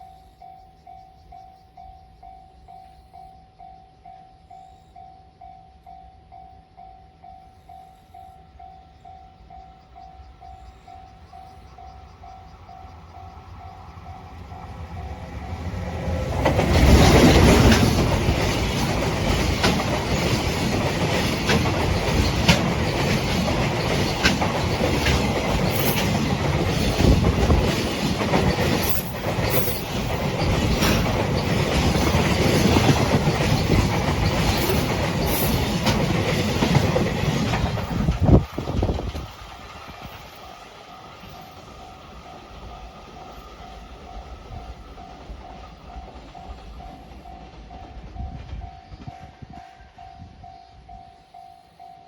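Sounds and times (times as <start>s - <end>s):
train rumbling past: 0.0s - 52.0s
wheels clacking over rail joints: 12.0s - 49.1s.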